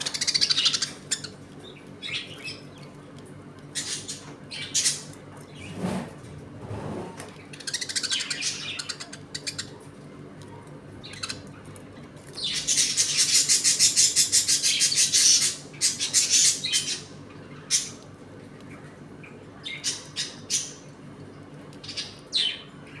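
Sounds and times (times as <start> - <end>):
budgerigars chattering: 0.0 - 1.4, 7.6 - 9.8, 12.4 - 17.1.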